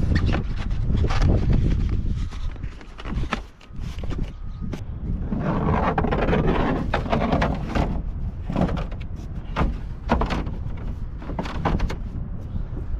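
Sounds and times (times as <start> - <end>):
scraping: 5.1 - 12.2
knocks and clatter: 5.8 - 12.1.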